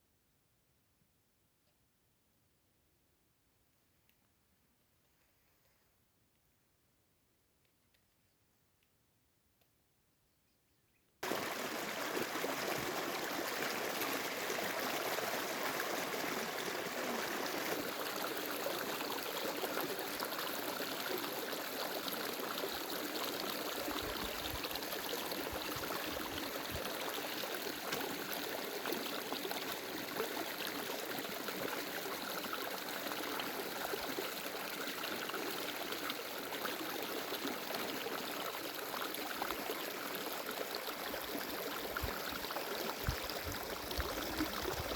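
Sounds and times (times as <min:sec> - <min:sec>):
stream water flowing: 0:11.2 - 0:44.9.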